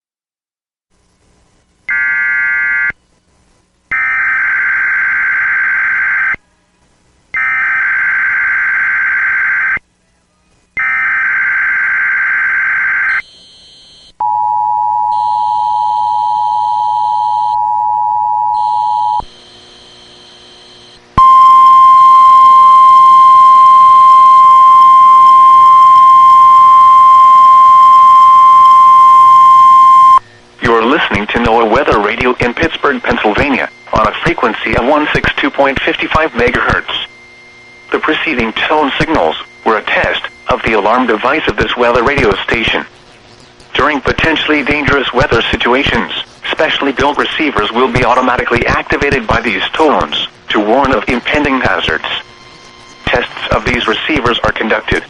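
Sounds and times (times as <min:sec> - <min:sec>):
loud steady warning alarm tone: 0:07.4 - 0:09.8, 0:10.8 - 0:42.9, 0:43.8 - 0:54.6.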